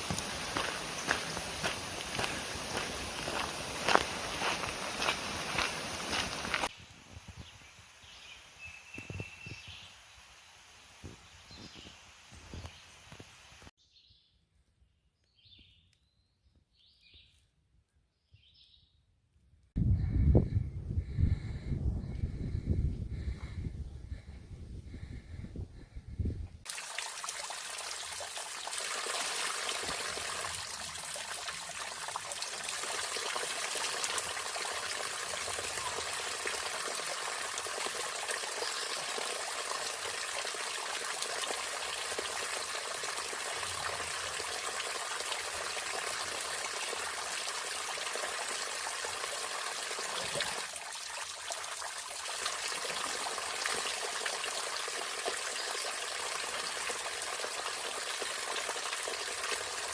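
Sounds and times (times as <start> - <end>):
stream rushing: 0.0 - 6.7, 26.7 - 59.9.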